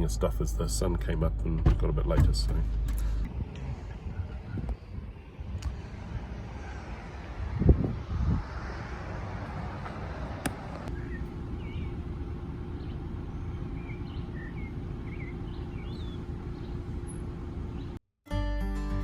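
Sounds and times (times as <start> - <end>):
low background rumble: 0.0 - 18.0
birds chirping: 1.6 - 7.7, 10.6 - 18.0.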